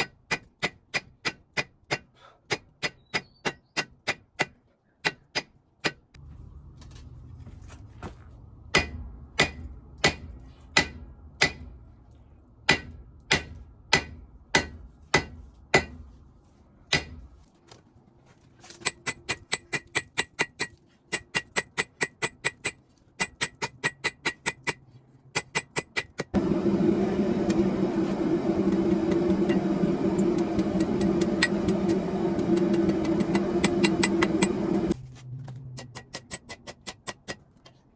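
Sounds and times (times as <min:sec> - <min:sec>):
machine hum with low drone: 0:06.2 - 0:14.4, 0:26.4 - 0:35.9
low rumble: 0:26.4 - 0:35.8.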